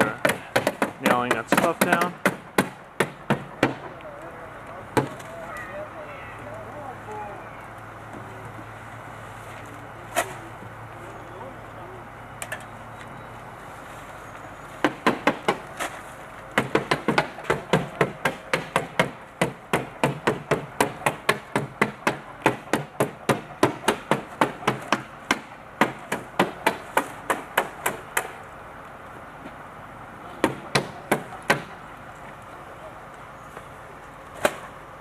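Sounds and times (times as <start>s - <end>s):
hammering nails into roof: 0.0s - 3.9s, 14.8s - 15.6s, 16.6s - 28.4s, 30.4s - 31.8s.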